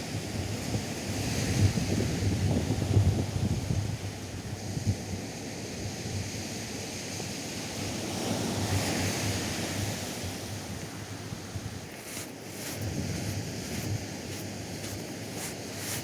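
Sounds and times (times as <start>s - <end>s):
waves breaking on beach: 8.3s - 16.0s
wind rumbling on microphone: 10.3s - 16.0s.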